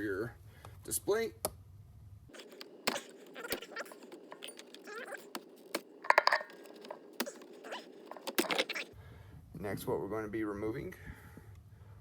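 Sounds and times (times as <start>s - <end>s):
plastic parts clicking: 2.4s - 8.9s.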